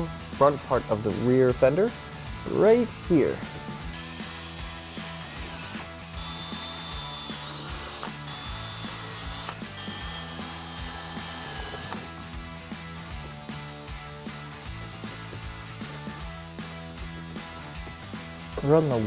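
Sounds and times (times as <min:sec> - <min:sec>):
quiet background music: 0:00.0 - 0:19.0
tool buzzing rattle: 0:03.9 - 0:12.0.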